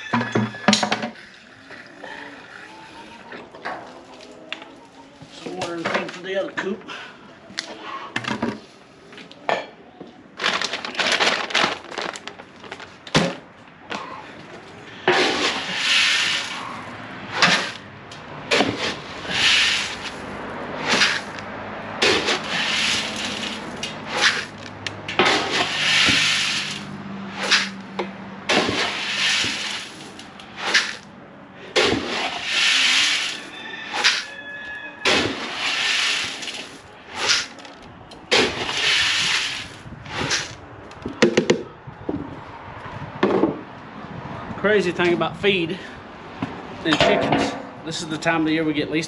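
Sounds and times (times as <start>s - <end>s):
chicken feed pouring hiss: 15.3s - 16.7s, 19.3s - 20.2s, 22.3s - 23.6s, 25.5s - 26.9s, 28.7s - 30.9s, 32.1s - 33.5s, 35.4s - 36.7s, 38.6s - 40.4s.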